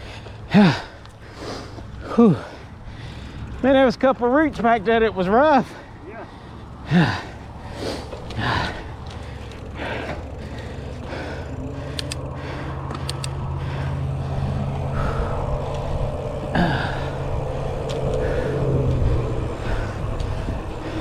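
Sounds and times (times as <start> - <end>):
rider breathing hard: 0.0 - 3.6, 5.6 - 21.0
bike clicks and rattles: 0.0 - 21.0
bike tyres rumbling on dirt: 0.0 - 21.0
wind on microphone: 13.2 - 21.0.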